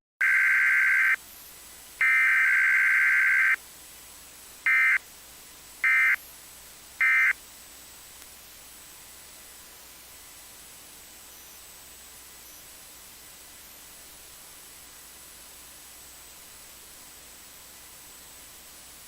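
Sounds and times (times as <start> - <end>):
digital data tone bursts: 0.2 - 1.2, 2.0 - 3.6, 4.7 - 5.0, 5.8 - 6.3, 7.0 - 7.4.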